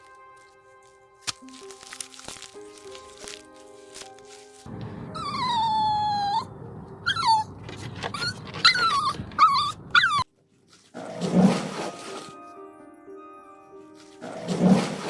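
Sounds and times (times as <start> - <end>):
dog whining: 5.1 - 10.3.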